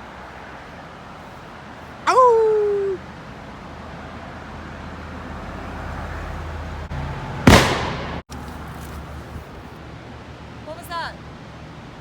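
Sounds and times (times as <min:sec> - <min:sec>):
gunshot with echo: 0:07.5 - 0:08.2.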